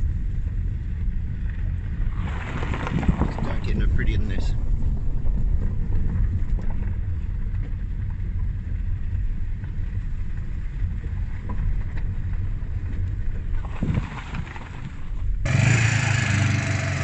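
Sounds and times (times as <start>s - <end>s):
wind buffeting microphone: 0.0s - 15.5s
dirt bike engine rumble: 0.0s - 17.0s.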